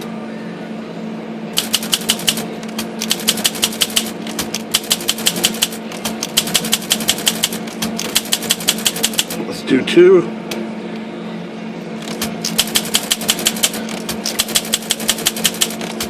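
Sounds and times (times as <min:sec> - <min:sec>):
steady low hum: 0:00.0 - 0:16.0
manual typewriter typing: 0:01.6 - 0:09.4, 0:12.0 - 0:16.0.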